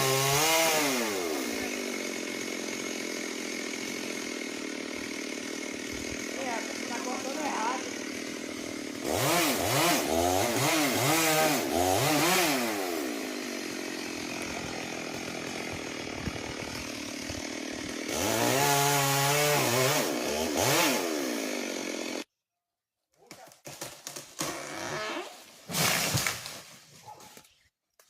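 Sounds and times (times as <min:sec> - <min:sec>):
chainsaw revving: 0:00.0 - 0:22.3.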